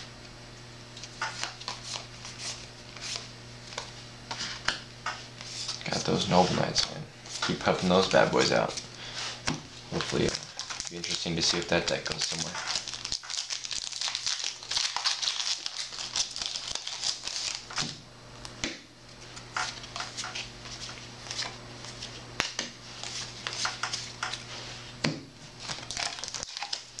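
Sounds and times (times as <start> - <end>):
low steady hum: 0.0 - 27.0
foil wrappers crinkling: 1.0 - 4.0, 9.9 - 17.9, 19.3 - 22.2, 22.8 - 24.5, 25.6 - 27.0
cards being handled: 1.0 - 4.7, 5.4 - 18.0, 19.2 - 27.0.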